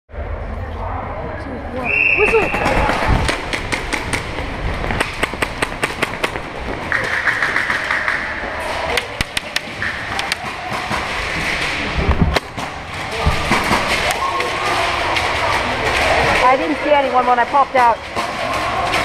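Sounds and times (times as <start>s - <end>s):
airsoft guns firing: 4.9s - 8.3s.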